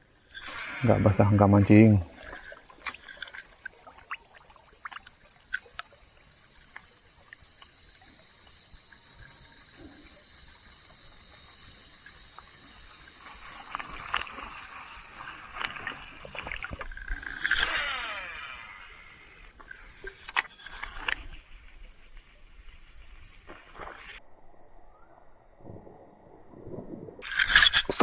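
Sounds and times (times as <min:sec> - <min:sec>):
water splashing from wading: 0:00.3 - 0:16.9
small clicks: 0:19.6 - 0:21.4.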